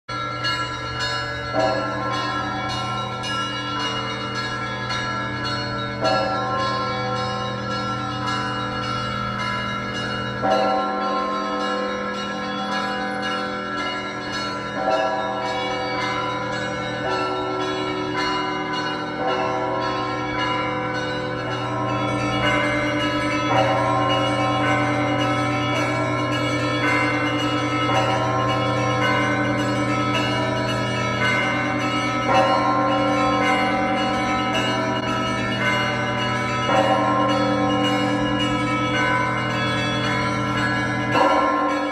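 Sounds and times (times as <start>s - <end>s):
small church bells ringing rapidly: 0.0s - 41.9s.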